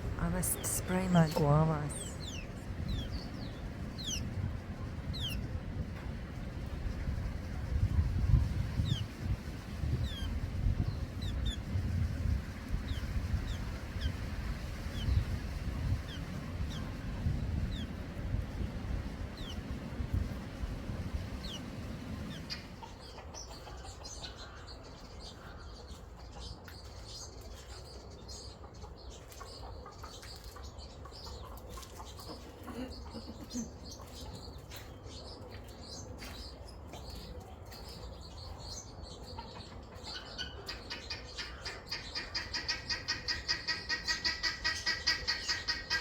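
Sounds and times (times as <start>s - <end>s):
small birds chirping: 0.0s - 5.8s, 6.8s - 46.0s.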